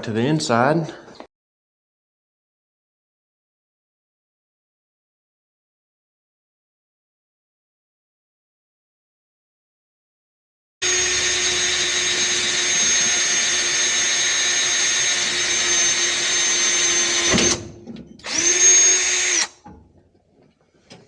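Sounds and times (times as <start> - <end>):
electric power drill whining: 10.8 - 19.6.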